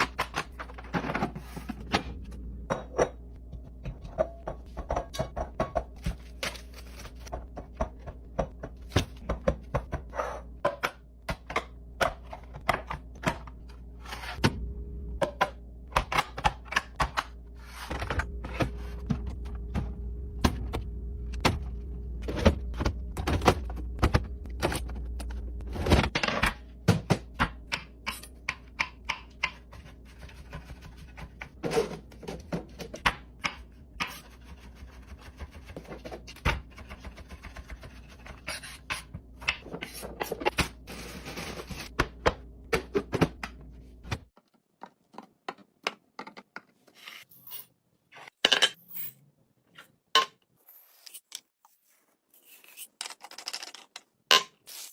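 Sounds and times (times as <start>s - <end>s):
steady low hum: 11.1s - 16.0s, 16.7s - 26.1s.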